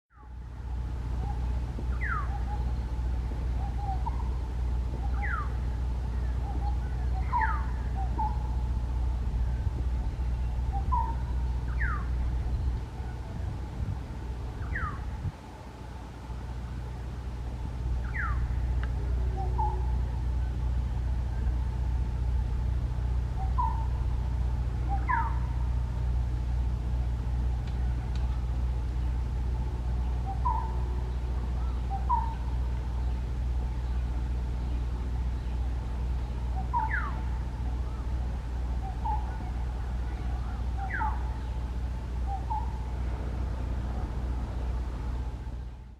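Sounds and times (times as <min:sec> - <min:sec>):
steady low hum: 0:00.1 - 0:45.9
bird calling whistles: 0:01.2 - 0:02.8, 0:05.0 - 0:05.6, 0:06.4 - 0:08.5, 0:10.7 - 0:12.7, 0:14.6 - 0:15.0, 0:18.0 - 0:18.4, 0:23.4 - 0:23.9, 0:24.9 - 0:25.4, 0:30.2 - 0:30.8, 0:31.6 - 0:32.4, 0:36.6 - 0:37.3, 0:38.8 - 0:39.4, 0:40.8 - 0:41.3, 0:42.2 - 0:42.8.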